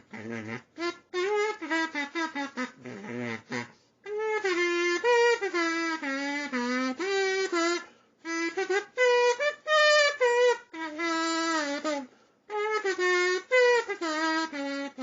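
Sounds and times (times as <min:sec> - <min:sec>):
kazoo playing a tune: 0:00.0 - 0:15.0.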